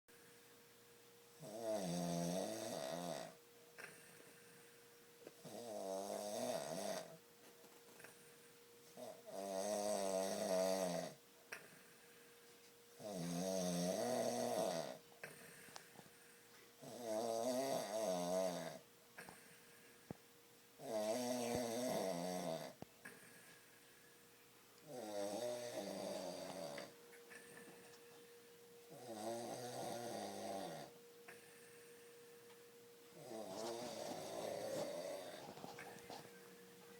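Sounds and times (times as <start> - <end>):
man snoring: 1.4 - 3.4, 5.4 - 7.2, 9.0 - 11.2, 13.0 - 15.0, 16.8 - 18.8, 20.8 - 22.8, 24.9 - 26.9, 28.9 - 31.0, 33.2 - 35.6.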